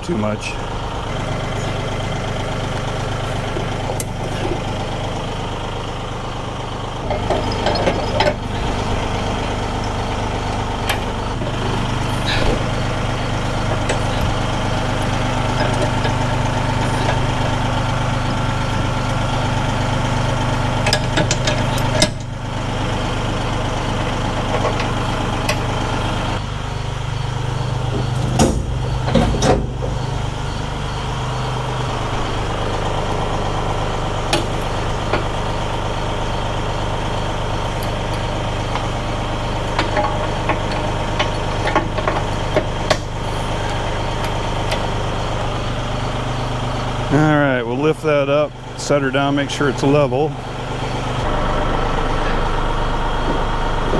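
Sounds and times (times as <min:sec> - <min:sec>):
tractor engine idling: 0:00.0 - 0:53.9
metallic clicks and clanks: 0:07.1 - 0:10.0, 0:10.8 - 0:19.2, 0:20.8 - 0:22.3, 0:37.7 - 0:45.0.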